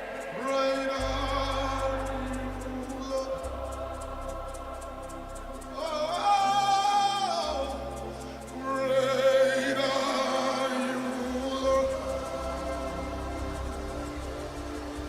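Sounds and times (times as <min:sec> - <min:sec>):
person singing: 0:00.0 - 0:15.0
sustained keyboard chords: 0:00.0 - 0:15.0.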